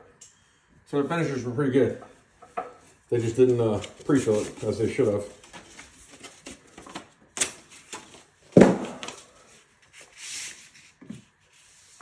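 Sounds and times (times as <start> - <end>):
papery rustle: 3.2 - 8.4, 9.0 - 12.0.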